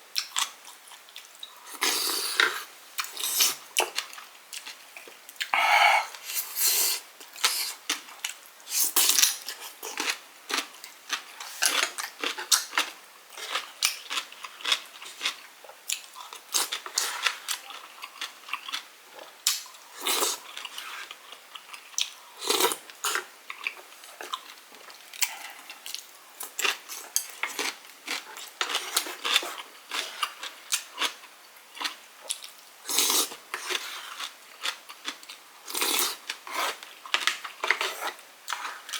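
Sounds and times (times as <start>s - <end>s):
close-up chewing: 9.0s - 38.9s.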